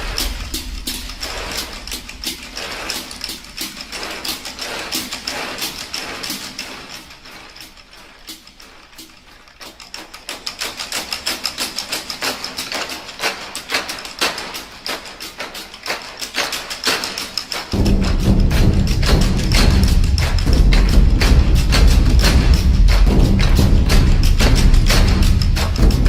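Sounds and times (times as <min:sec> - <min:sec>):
rapid mechanical clicking: 0:00.0 - 0:26.0
heavy low thumping: 0:17.8 - 0:26.0.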